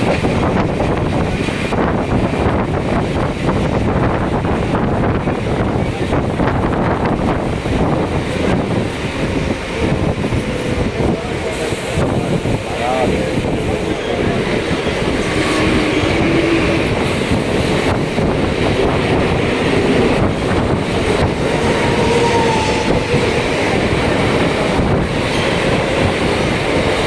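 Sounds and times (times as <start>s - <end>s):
train wheels rumbling on rails: 0.0s - 27.0s
train wheels clacking: 6.4s - 27.0s.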